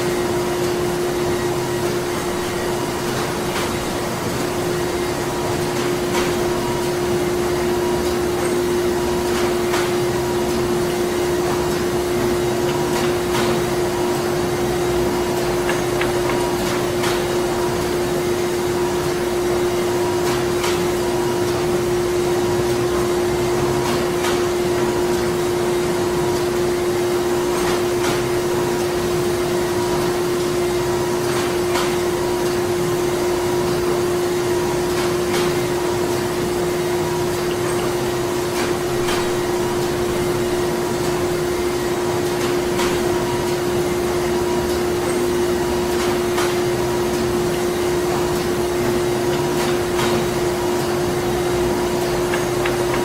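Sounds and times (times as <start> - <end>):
machinery droning: 7.4 - 20.3.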